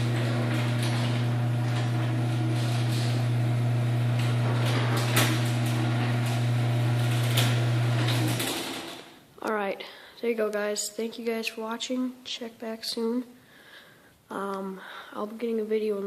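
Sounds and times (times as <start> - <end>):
garage door clunk: 0.0 - 9.2
garage door opener motor humming: 0.0 - 9.3.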